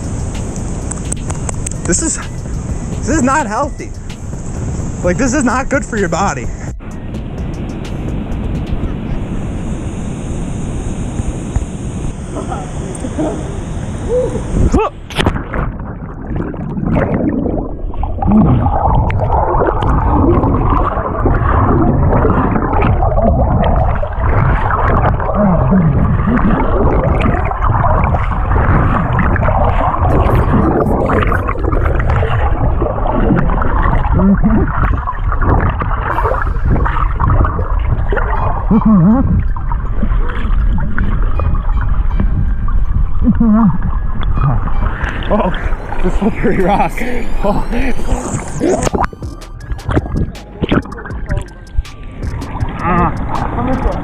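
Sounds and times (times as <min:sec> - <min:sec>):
muffled rushing river water: 0:00.0 - 0:49.2
gurgling bubbles: 0:11.6 - 0:54.0.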